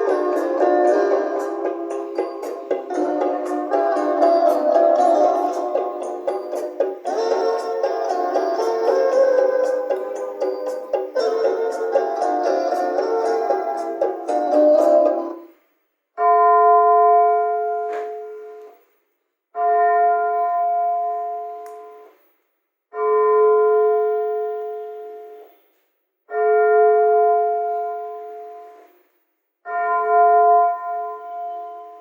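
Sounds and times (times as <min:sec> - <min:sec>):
church bell tolling: 0:16.2 - 0:18.6, 0:19.6 - 0:22.1, 0:22.9 - 0:25.3, 0:26.3 - 0:28.8, 0:29.7 - 0:32.0.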